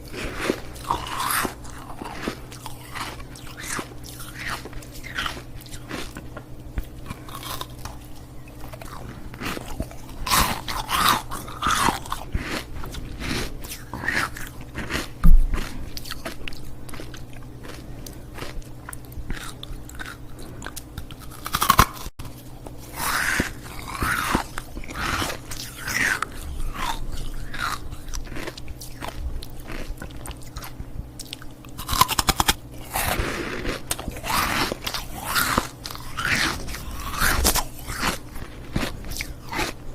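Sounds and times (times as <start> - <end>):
ice cubes being chewed: 0.0 - 39.8.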